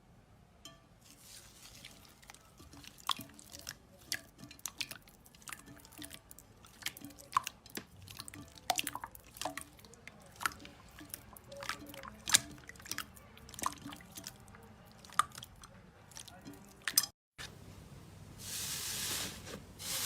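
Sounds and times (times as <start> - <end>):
slime squishing wet clicks: 1.8 - 17.1.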